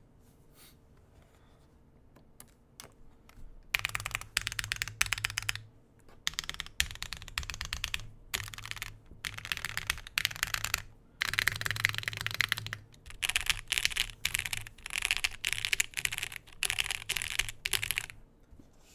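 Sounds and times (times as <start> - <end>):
fast typing on mechanical keyboard: 2.8 - 5.6, 6.2 - 18.2.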